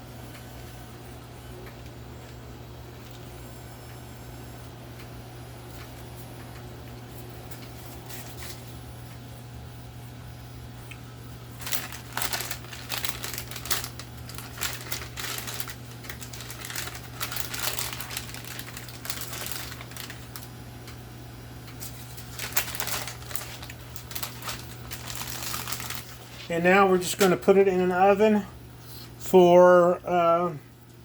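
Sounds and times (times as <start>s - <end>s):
steady low hum: 0.0s - 31.0s
crinkling wrapping: 11.4s - 21.0s, 21.6s - 27.5s.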